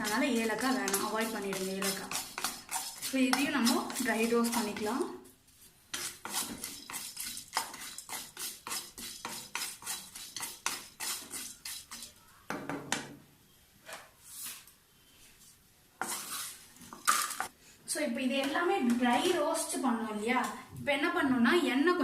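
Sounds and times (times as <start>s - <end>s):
spatula scraping spices in pan: 0.0s - 12.3s, 16.0s - 17.5s.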